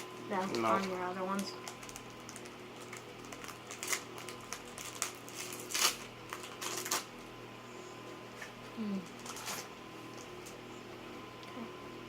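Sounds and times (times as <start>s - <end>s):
faint steady hum: 0.0s - 12.0s
cards and wrapping rustling: 0.3s - 7.2s, 8.8s - 9.7s.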